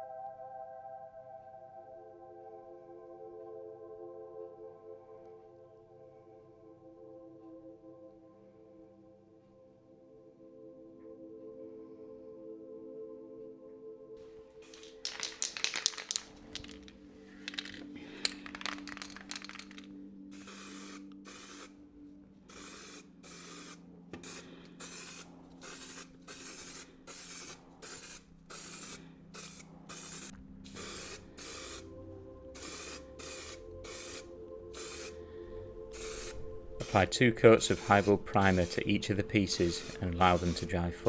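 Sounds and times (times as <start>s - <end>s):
aerosol can spraying: 14.6s - 21.8s, 22.5s - 31.9s, 32.6s - 41.0s.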